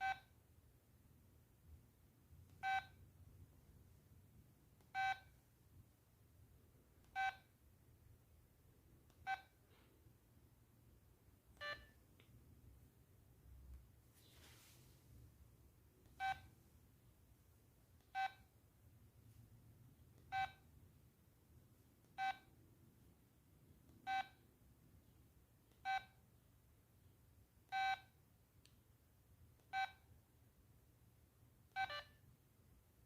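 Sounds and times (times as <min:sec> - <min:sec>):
phone keypad beeps: 0:00.0 - 0:00.3, 0:02.6 - 0:03.0, 0:05.0 - 0:05.3, 0:07.1 - 0:07.5, 0:09.2 - 0:09.5, 0:11.6 - 0:12.0, 0:16.2 - 0:16.5, 0:18.2 - 0:18.5, 0:20.3 - 0:20.6, 0:22.2 - 0:22.5, 0:24.1 - 0:24.4, 0:25.8 - 0:26.2, 0:27.7 - 0:28.1, 0:29.7 - 0:30.0, 0:31.8 - 0:32.2.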